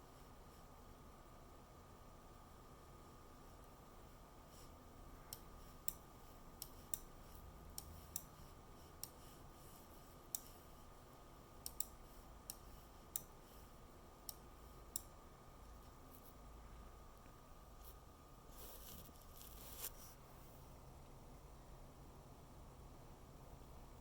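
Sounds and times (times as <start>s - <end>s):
faint steady tone: 0.0s - 24.0s
faint irregular electrical clicks: 3.4s - 16.5s.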